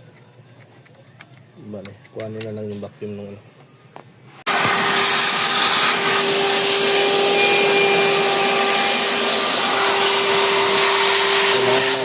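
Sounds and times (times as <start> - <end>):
vacuum cleaner humming: 4.5 - 12.0.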